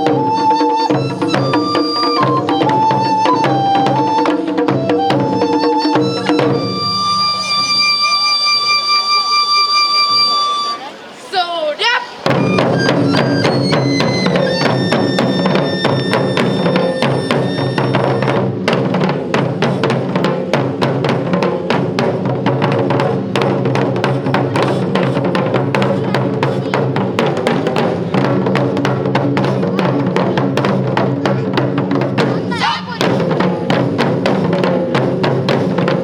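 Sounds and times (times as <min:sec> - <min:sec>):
taiko drums playing fast: 0:00.0 - 0:08.5, 0:12.2 - 0:36.0
held high melodic tones: 0:00.0 - 0:11.1, 0:12.2 - 0:18.5.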